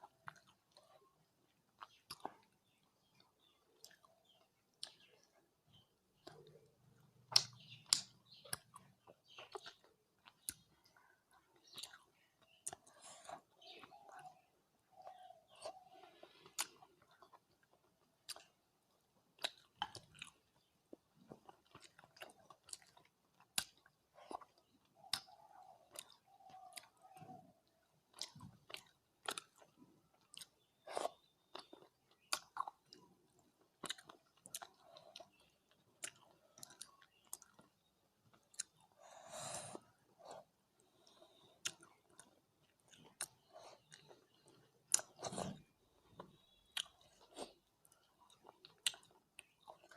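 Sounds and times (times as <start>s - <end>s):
wet chewing mouth clicks: 1.8s - 5.4s, 6.2s - 18.6s, 28.1s - 39.0s, 39.7s - 49.9s.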